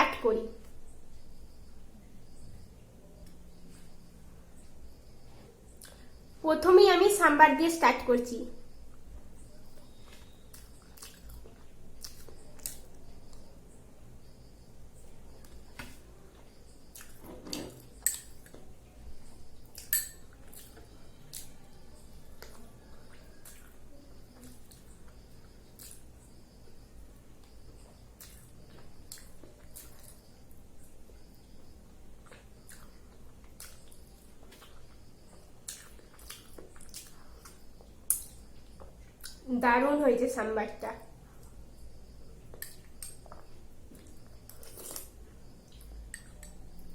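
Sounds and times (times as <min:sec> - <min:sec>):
soft eating sounds: 0:00.1 - 0:06.4, 0:08.5 - 0:39.6, 0:40.7 - 0:46.9
wet chewing and mouth sounds: 0:09.6 - 0:13.5, 0:15.3 - 0:17.2, 0:19.3 - 0:21.6, 0:22.2 - 0:26.5, 0:27.4 - 0:30.5, 0:31.2 - 0:39.5, 0:41.4 - 0:46.9
cutlery clinking against a dish: 0:17.5 - 0:18.5, 0:19.8 - 0:20.2.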